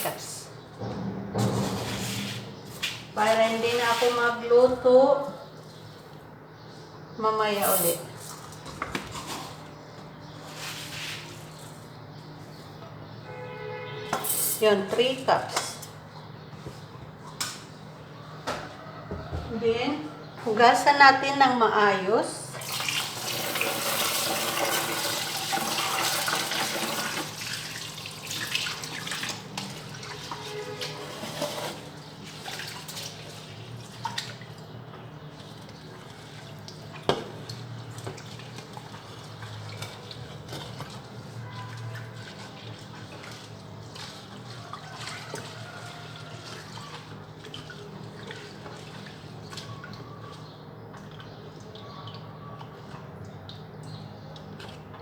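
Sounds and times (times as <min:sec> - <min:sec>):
rice washed by hand splashing: 0:10.3 - 0:12.0, 0:22.6 - 0:54.9
tap water running into pot: 0:22.6 - 0:34.7.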